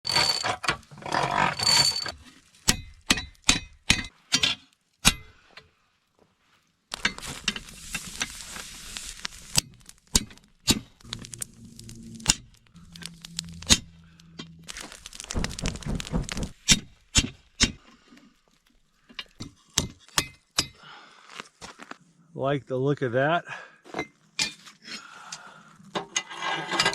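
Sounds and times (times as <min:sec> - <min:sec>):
steady noise: 0:07.4 - 0:17.0
metallic ringing note: 0:11.0 - 0:15.6.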